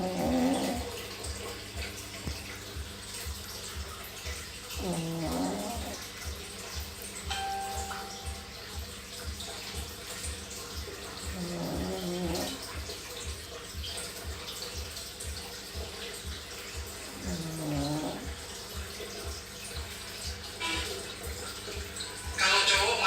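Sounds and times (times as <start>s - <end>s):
puppy snoring: 0.0s - 1.0s, 4.8s - 6.1s, 11.2s - 12.7s, 17.1s - 18.3s
low repeating pulse: 2.7s - 9.9s.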